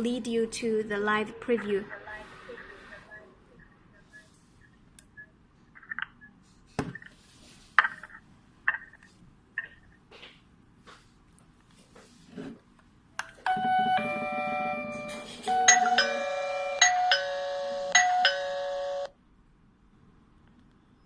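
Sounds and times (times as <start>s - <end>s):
doorbell click: 13.5s - 19.1s
electronic doorbell chime tune: 13.5s - 19.1s.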